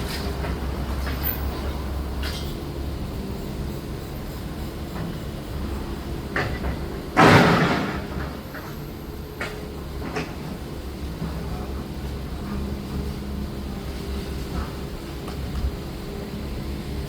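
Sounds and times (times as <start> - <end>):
crash of falling debris: 7.2 - 8.4.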